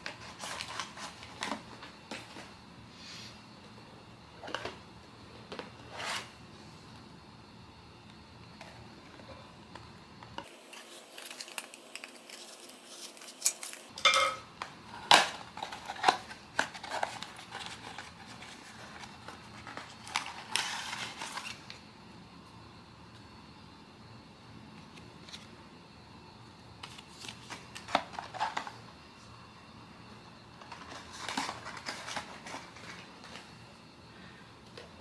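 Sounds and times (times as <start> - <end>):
packaging crinkling rustle: 10.4 - 14.0, 15.1 - 21.8, 26.8 - 28.8, 30.6 - 33.4.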